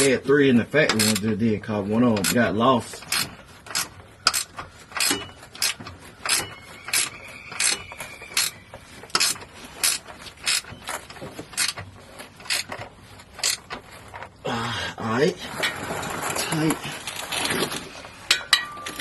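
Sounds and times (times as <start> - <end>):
ratchet pawl clicks: 0.9 - 1.2.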